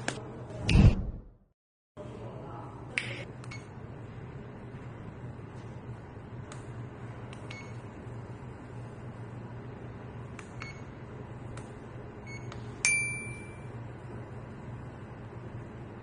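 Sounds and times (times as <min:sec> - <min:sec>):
steady low hum: 0:02.0 - 0:16.0.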